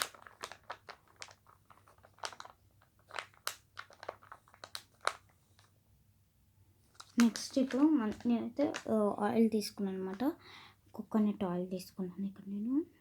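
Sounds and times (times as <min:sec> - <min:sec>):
sticky slime clicks and crackles: 0:07.0 - 0:09.0.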